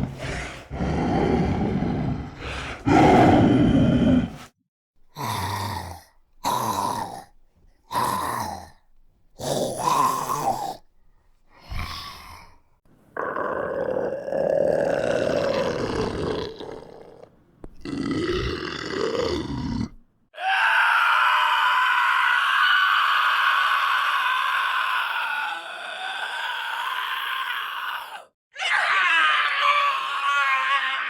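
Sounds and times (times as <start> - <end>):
zombie growls and grunts: 0.0 - 4.5, 5.1 - 8.8, 9.4 - 10.8, 11.5 - 12.6, 13.2 - 20.6.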